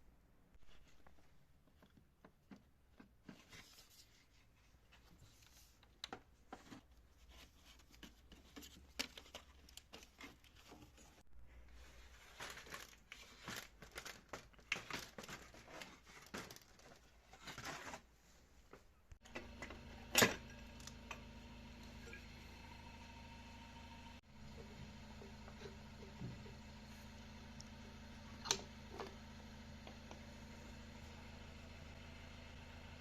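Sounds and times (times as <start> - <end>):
crinkling rustles: 0.6 - 19.0.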